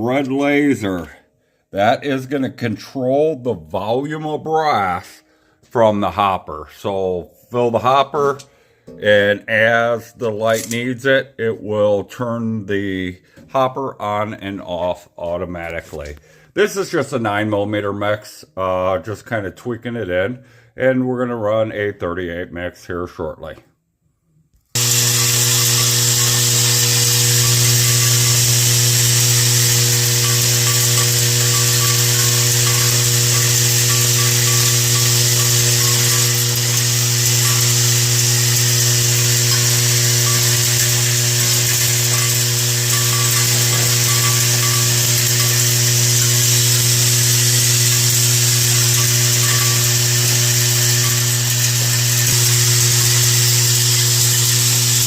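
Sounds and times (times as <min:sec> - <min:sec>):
sorter machine humming: 0:24.8 - 0:55.0.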